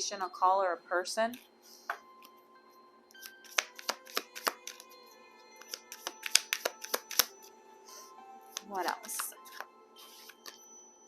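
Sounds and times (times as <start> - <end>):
soft background music: 0.0 - 11.0
cards clicking on table: 3.2 - 4.9, 5.6 - 7.3, 8.6 - 10.6.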